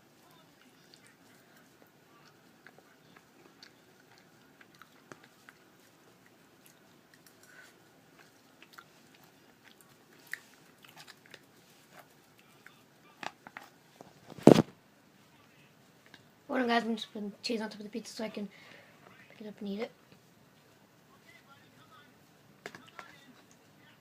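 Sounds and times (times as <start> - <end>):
person chewing: 0.2 - 13.8.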